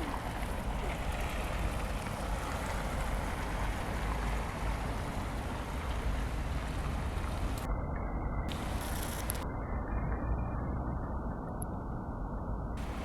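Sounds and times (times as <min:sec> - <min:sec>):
wind buffeting microphone: 0:12.8 - 0:13.0.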